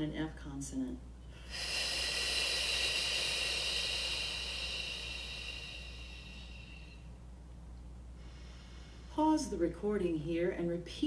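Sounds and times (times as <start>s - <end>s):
voiceless f exhale hissing: 1.4s - 7.2s, 8.2s - 9.3s.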